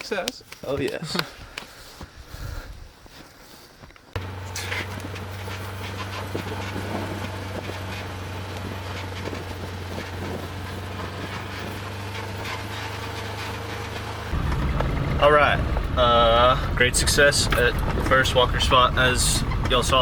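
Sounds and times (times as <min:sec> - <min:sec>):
vehicle engine running: 0:04.2 - 0:20.0.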